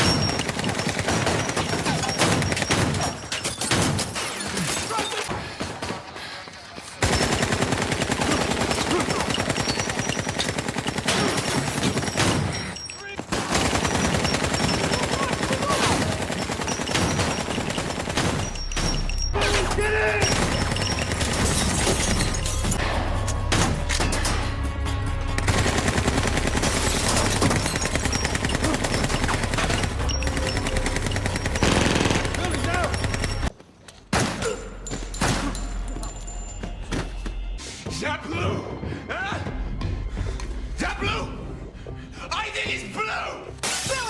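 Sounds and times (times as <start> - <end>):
automatic gunfire: 7.0 - 12.6, 13.3 - 18.6, 25.5 - 33.5.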